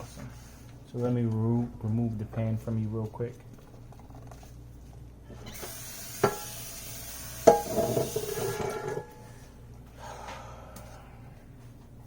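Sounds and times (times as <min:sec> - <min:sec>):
running tap water: 0:05.6 - 0:08.6.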